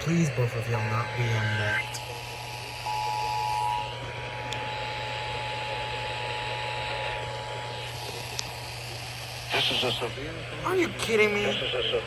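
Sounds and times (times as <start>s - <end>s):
broadcast hiss: 7.6s - 12.0s.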